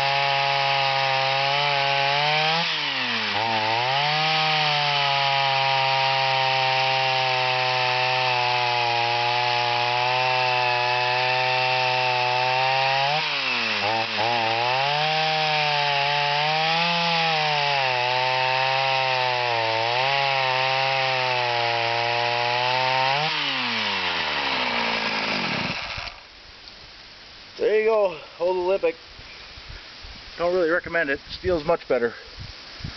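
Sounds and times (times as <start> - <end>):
chainsaw running: 0.0 - 26.3.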